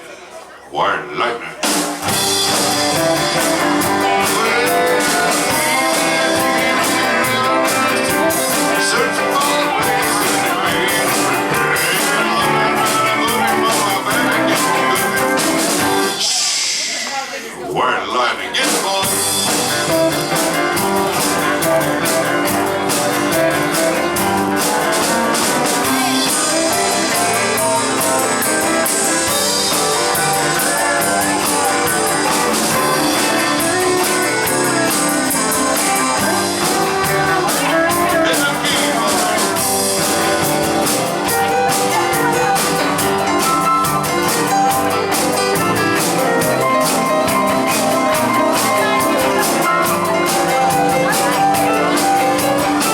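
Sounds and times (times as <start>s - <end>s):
country band playing: 0.0s - 52.9s.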